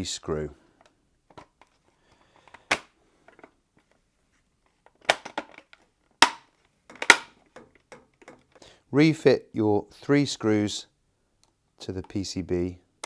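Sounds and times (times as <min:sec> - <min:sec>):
loud plastic clicks: 0:02.6 - 0:02.9, 0:05.0 - 0:07.4.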